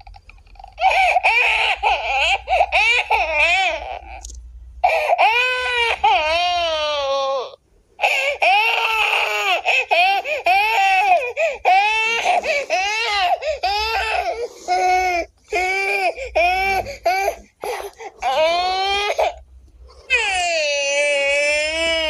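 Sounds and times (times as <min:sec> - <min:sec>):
baby crying: 0:00.6 - 0:19.4, 0:20.0 - 0:22.0.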